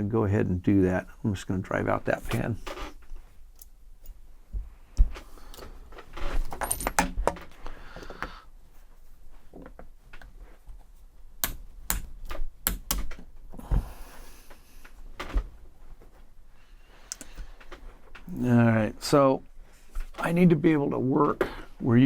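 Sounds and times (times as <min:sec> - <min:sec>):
metal tools clinking: 0:06.5 - 0:07.0.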